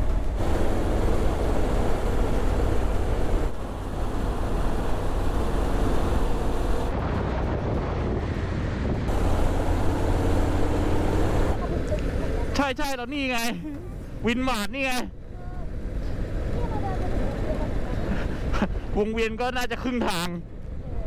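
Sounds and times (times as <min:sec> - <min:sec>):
motorcycle engine running: 0:00.0 - 0:07.0, 0:09.1 - 0:19.0
wind rumble on microphone: 0:00.0 - 0:12.6.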